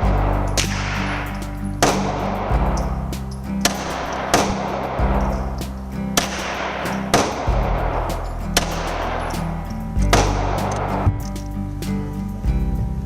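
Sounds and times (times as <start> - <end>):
background music with bass line: 0.0 - 13.0
pistol shots: 6.2 - 9.6.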